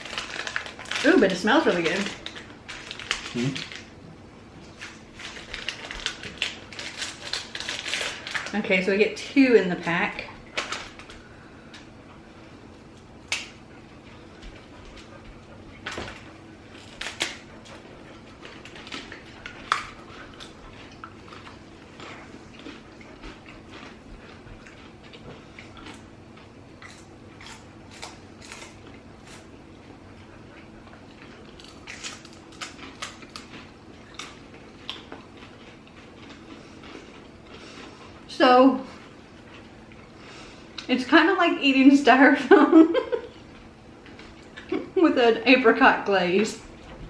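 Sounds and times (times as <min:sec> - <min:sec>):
rice cakes crunching: 0:00.0 - 0:04.0, 0:04.7 - 0:08.6, 0:15.7 - 0:29.7, 0:31.0 - 0:38.2
snack pack crackling: 0:00.0 - 0:04.0, 0:04.7 - 0:08.6, 0:10.4 - 0:11.9, 0:15.8 - 0:24.0, 0:31.2 - 0:37.3.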